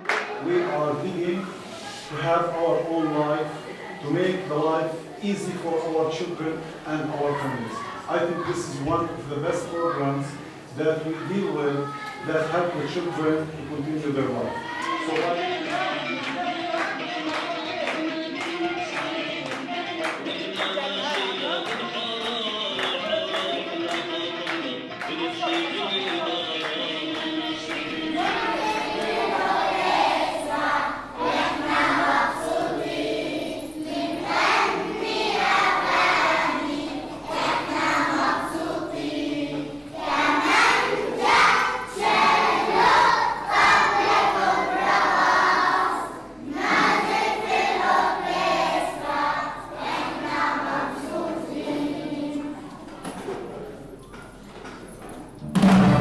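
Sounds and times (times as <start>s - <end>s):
children singing in chorus: 14.3s - 19.5s, 27.1s - 53.3s.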